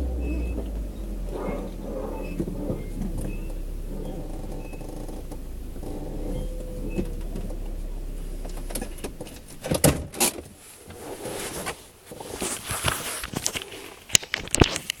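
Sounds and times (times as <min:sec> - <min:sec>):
steady low hum: 0:00.0 - 0:10.4
car suspension creaking and knocking: 0:00.0 - 0:13.4.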